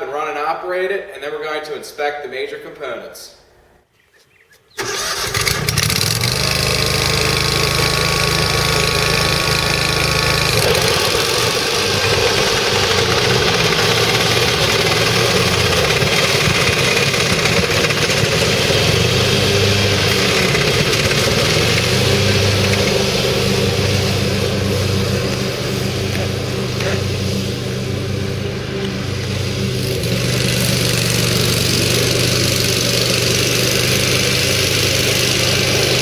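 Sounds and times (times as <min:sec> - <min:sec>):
mower engine running: 0:04.8 - 0:36.0.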